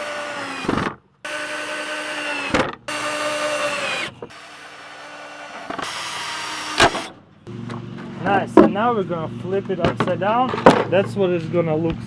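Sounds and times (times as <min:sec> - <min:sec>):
power drill driving screws: 0:00.0 - 0:07.1.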